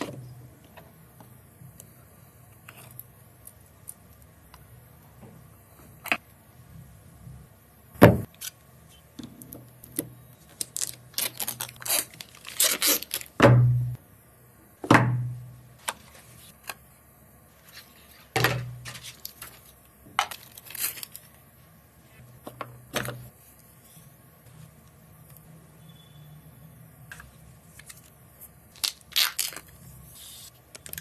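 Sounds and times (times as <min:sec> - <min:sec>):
packaging rustling and tearing: 0:10.4 - 0:13.4, 0:17.7 - 0:21.4, 0:28.7 - 0:29.8.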